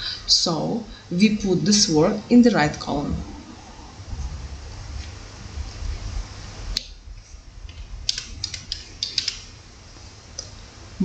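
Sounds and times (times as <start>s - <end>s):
low steady rumble: 0.0s - 11.0s
sharp click: 8.1s - 9.4s.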